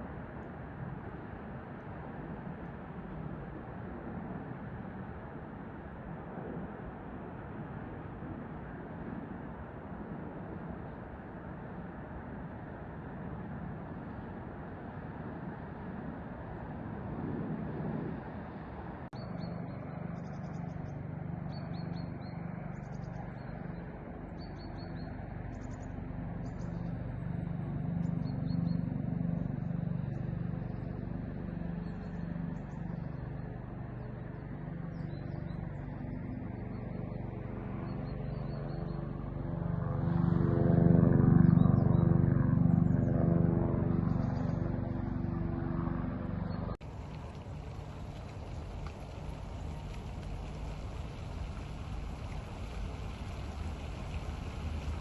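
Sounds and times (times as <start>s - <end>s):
engine running: 40.9s - 55.0s.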